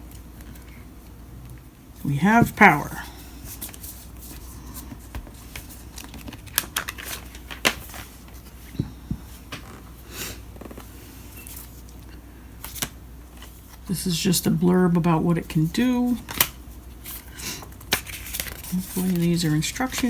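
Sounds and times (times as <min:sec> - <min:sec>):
plastic and paper rustling: 0:03.5 - 0:08.6, 0:17.0 - 0:20.0.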